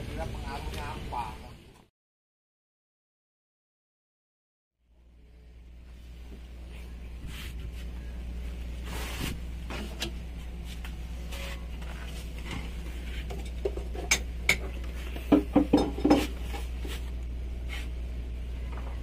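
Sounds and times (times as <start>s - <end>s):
steady low hum: 4.8s - 19.0s
metal tools clinking and knocking: 15.3s - 16.3s.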